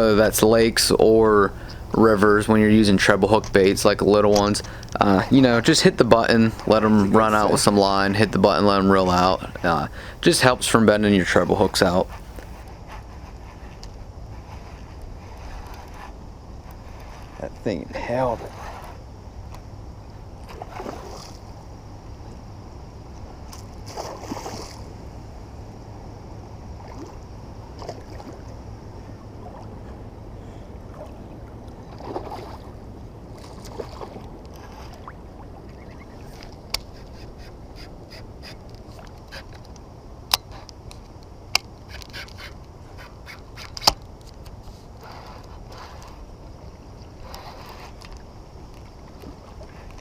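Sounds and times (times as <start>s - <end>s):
faint ticking: 0.0s - 12.6s
water sloshing around kayak: 0.0s - 17.4s, 20.3s - 21.7s, 26.7s - 50.0s.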